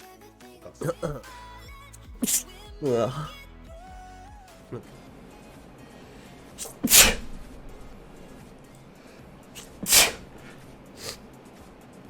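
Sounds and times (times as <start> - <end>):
person sneezing: 2.2 - 3.4, 6.6 - 7.9, 9.6 - 11.2.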